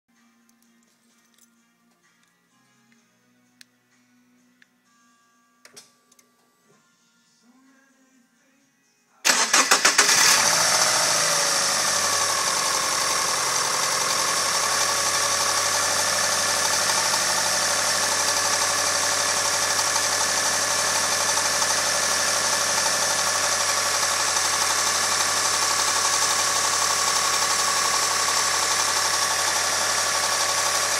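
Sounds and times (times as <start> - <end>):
car engine cranking and starting: 9.3 - 30.9
car engine idling: 9.3 - 30.9.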